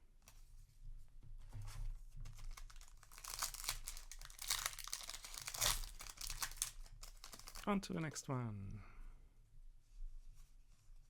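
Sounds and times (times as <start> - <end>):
foil wrapper crinkling and tearing: 2.3 - 7.7.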